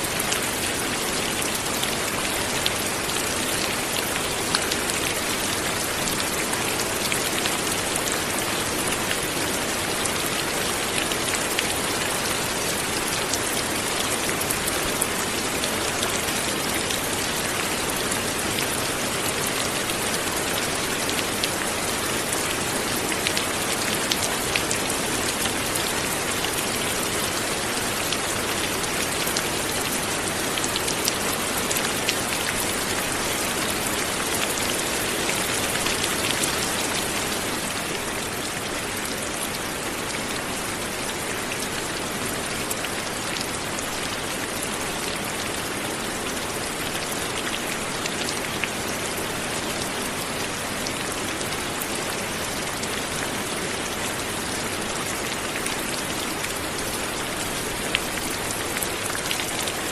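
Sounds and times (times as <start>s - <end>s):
light rain falling: 0.0s - 59.9s.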